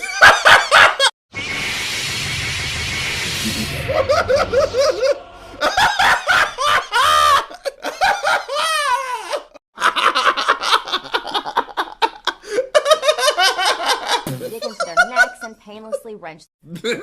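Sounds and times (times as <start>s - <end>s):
man laughing: 3.8s - 15.0s.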